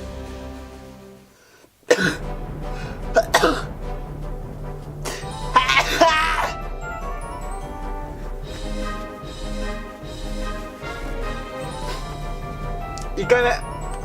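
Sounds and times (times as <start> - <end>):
background music: 0.0 - 14.0
man coughing and spluttering: 1.9 - 2.3, 3.1 - 3.8, 5.1 - 6.5.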